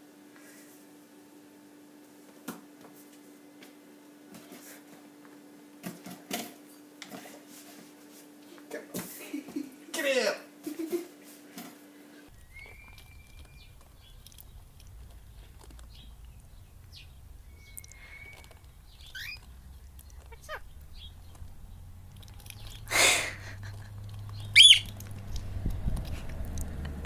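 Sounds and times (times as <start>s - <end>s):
loud rising and falling bird call: 12.3s - 25.3s
bird chirps and whistles: 12.4s - 13.8s, 16.9s - 21.2s, 24.4s - 25.0s
bird harsh screech: 17.4s - 19.5s, 20.1s - 21.1s, 24.4s - 25.0s.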